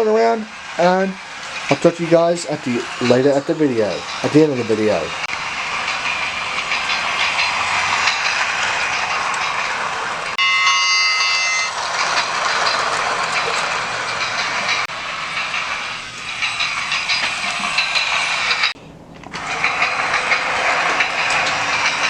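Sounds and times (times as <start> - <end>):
toy train motor whir: 0.0 - 18.8, 19.4 - 22.0.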